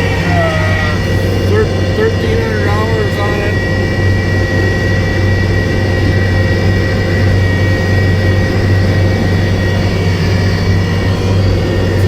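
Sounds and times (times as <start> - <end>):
high-pitched whine: 0.0 - 12.0
loader engine running: 0.0 - 12.0.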